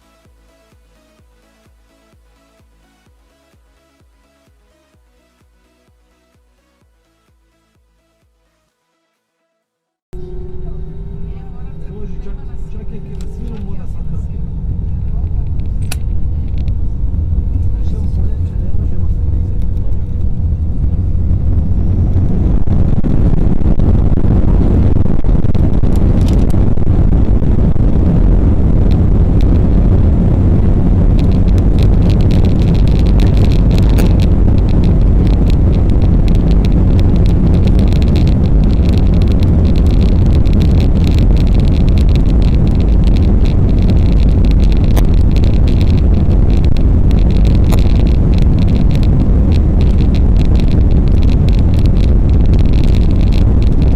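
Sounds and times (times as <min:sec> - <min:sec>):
jet engine and airflow rumble: 0:10.1 - 0:53.9.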